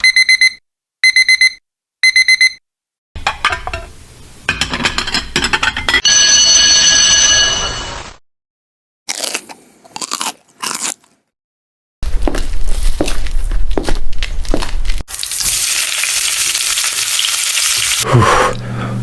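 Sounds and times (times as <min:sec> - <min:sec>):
alarm clock beeping: 0:00.0 - 0:02.6, 0:06.0 - 0:07.9.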